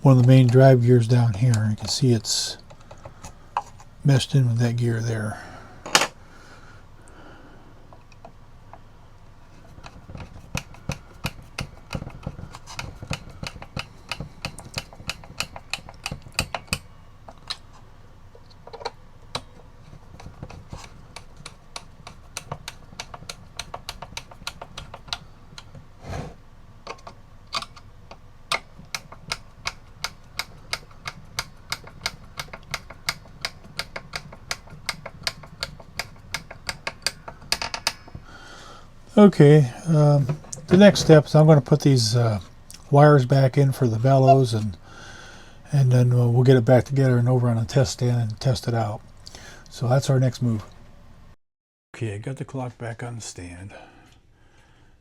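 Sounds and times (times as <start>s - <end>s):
clock mechanism clicking: 9.7s - 17.7s, 18.6s - 25.8s, 26.9s - 38.2s.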